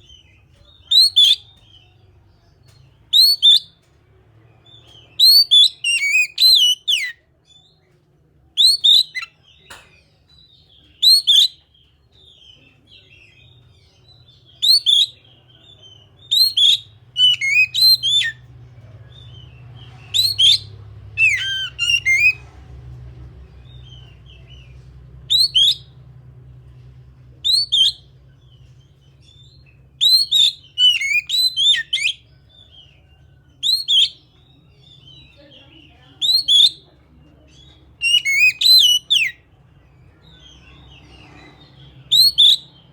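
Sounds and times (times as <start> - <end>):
bird singing whistled notes: 0.0 - 1.9, 3.1 - 3.8, 4.7 - 7.6, 8.6 - 9.4, 10.4 - 13.5, 14.3 - 18.4, 19.1 - 22.4, 23.6 - 25.9, 27.4 - 28.2, 29.2 - 35.4, 36.2 - 36.8, 37.7 - 39.4, 42.1 - 42.9
faint low hum: 0.0 - 42.9.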